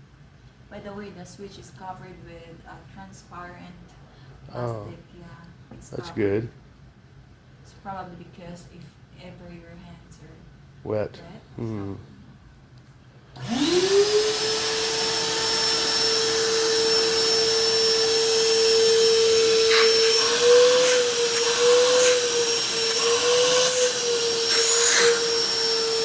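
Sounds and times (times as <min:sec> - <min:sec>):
vacuum cleaner motor whine: 0:13.4 - 0:26.0.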